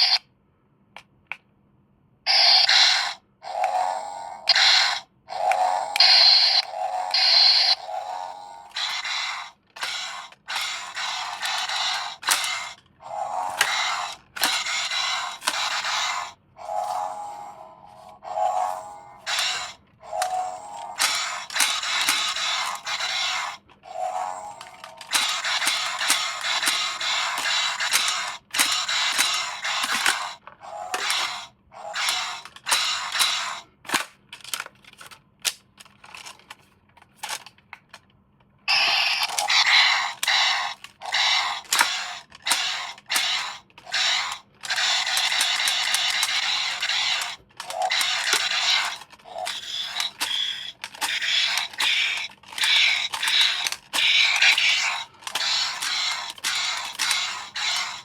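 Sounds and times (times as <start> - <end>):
toy packaging crinkling: 24.2 - 33.3, 33.9 - 38.0, 39.2 - 58.0.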